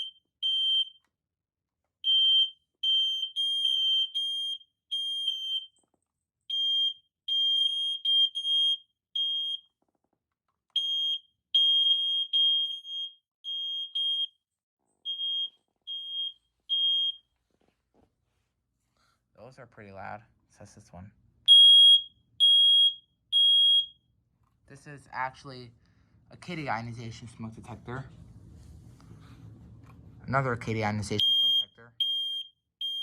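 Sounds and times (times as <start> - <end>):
smoke detector alarm beeps: 0.0 - 1.0, 2.0 - 5.8, 6.5 - 9.7, 10.8 - 14.4, 15.1 - 17.3, 21.5 - 24.1, 31.2 - 33.0.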